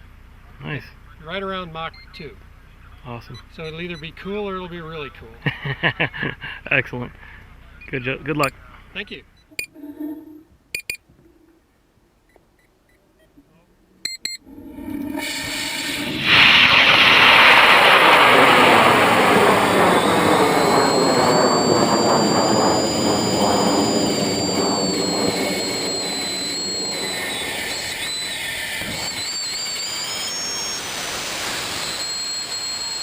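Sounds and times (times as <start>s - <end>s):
short beeps: 9.4s - 11.0s, 14.1s - 16.6s, 18.3s - 33.0s
rocket motor roar: 14.4s - 33.0s.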